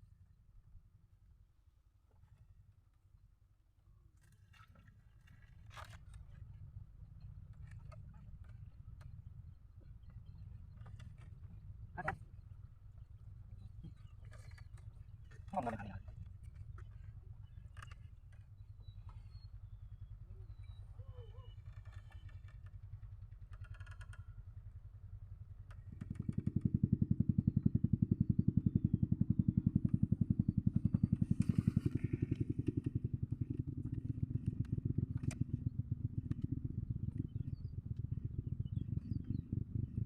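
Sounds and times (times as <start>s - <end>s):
small engine pulsing: 25.7s - 40.0s.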